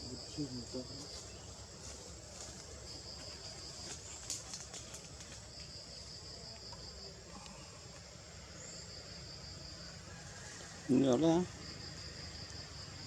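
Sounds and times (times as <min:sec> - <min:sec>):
high insect drone: 0:00.0 - 0:13.0.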